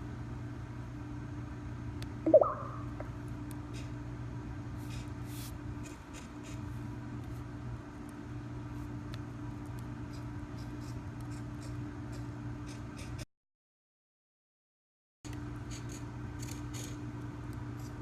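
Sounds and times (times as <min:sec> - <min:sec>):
steady low two-tone hum: 0:00.0 - 0:13.2.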